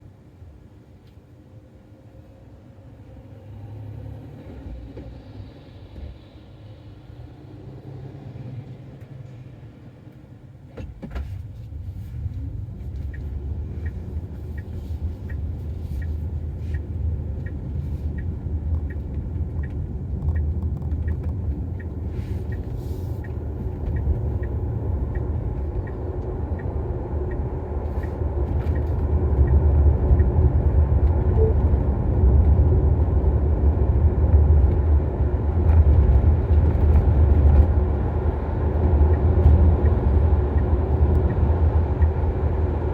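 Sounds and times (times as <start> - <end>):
road and tyre rumble in car: 0.0 - 42.9
light regular tick: 12.1 - 31.2, 38.7 - 42.4.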